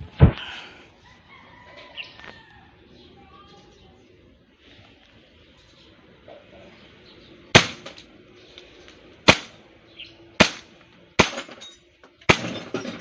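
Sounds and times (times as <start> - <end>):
airsoft pistol shots: 7.6 - 8.0, 9.3 - 9.6, 10.4 - 11.5.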